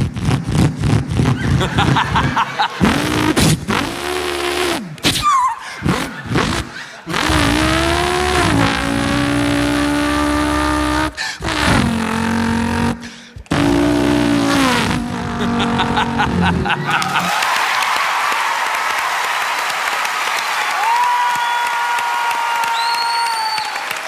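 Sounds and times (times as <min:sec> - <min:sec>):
car engine revving: 0:00.0 - 0:05.2, 0:05.8 - 0:17.3
applause: 0:16.9 - 0:24.0.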